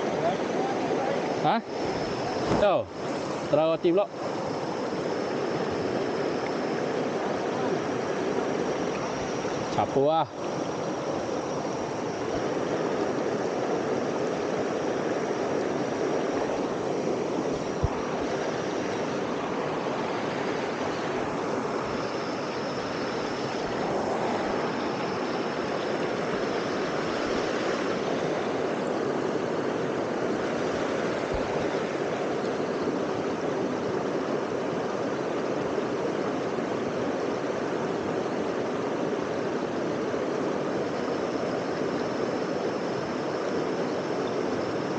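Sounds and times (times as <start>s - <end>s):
waterfall rushing: 0.0s - 32.4s.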